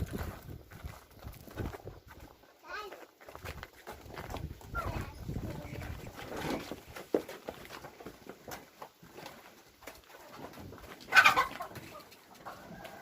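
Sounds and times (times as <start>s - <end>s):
hens and pigeons: 3.7s - 13.0s.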